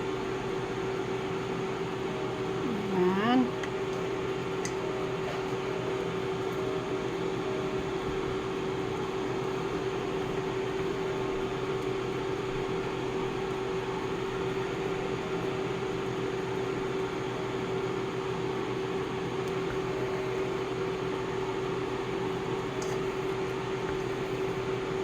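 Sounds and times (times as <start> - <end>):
fan motor whirring hum: 0.0 - 25.0.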